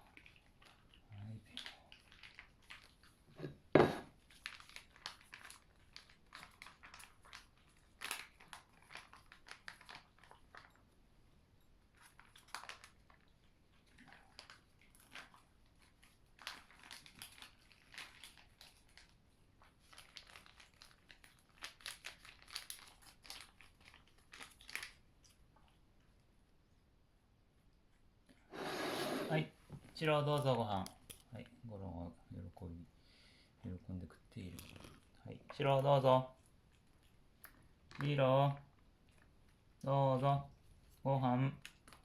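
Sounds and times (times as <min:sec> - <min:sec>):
cat crunching dry food: 0:00.1 - 0:03.3, 0:04.1 - 0:10.9, 0:11.8 - 0:25.6, 0:34.4 - 0:39.8.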